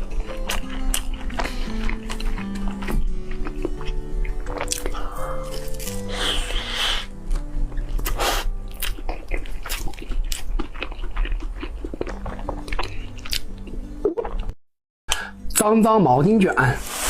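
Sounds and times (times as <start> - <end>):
crunchy chewing: 0.0 - 14.5
soft background music: 0.0 - 17.0.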